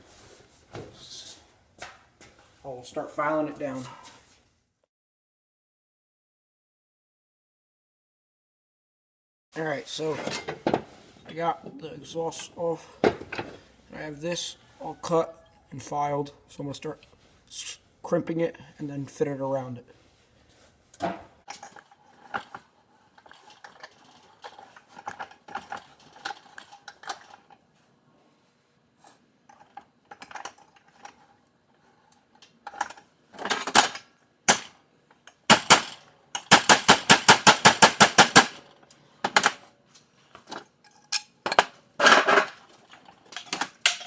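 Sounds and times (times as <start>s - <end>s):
metal knocking and clanking: 10.1s - 10.9s.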